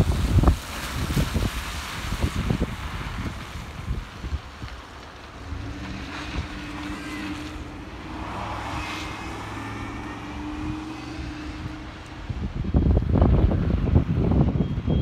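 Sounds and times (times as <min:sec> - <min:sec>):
truck engine droning: 0:05.0 - 0:15.0.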